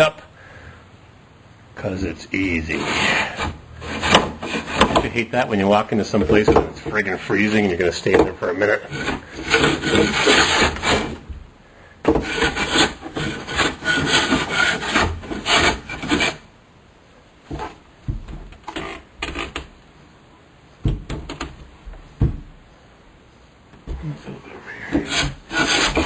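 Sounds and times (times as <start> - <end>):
hand plane shaving wood: 2.7 - 5.2, 6.1 - 11.2, 12.1 - 16.4, 24.9 - 26.0.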